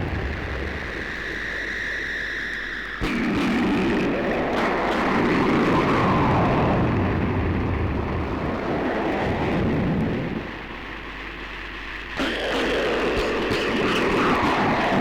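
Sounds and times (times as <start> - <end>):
dense rushing noise effect: 0.0 - 2.5.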